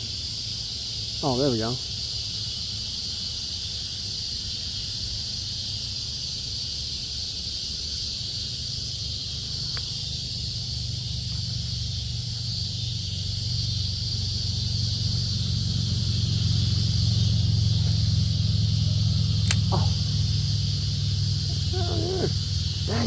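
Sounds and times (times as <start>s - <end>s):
high-pitched insect chorus: 0.0s - 23.0s
sharp click: 19.4s - 19.8s.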